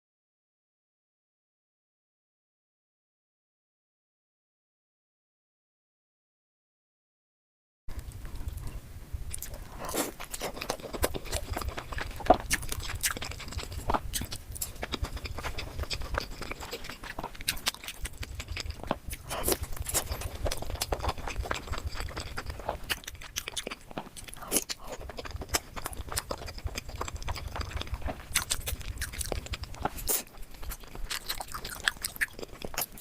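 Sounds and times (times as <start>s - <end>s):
person biting and chewing: 9.3s - 33.0s.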